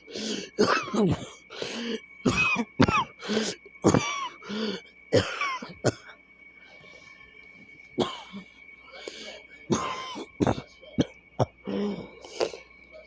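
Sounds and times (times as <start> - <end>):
person coughing: 0.2 - 1.5, 2.2 - 6.1, 8.0 - 8.5, 9.7 - 12.1.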